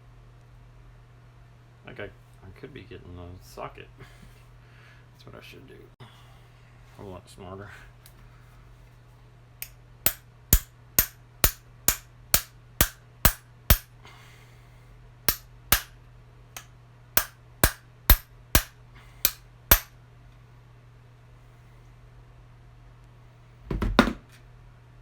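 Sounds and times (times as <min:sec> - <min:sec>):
hammer tapping metal socket: 0:09.6 - 0:13.9, 0:15.3 - 0:15.9, 0:16.6 - 0:19.9.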